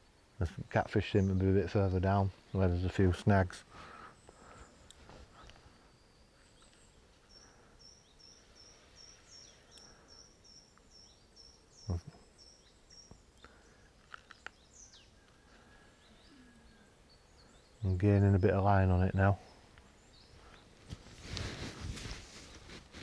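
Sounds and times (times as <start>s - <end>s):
bird chirping: 0.0s - 22.8s
faint clicks: 4.2s - 5.7s, 9.7s - 9.9s, 12.9s - 14.6s.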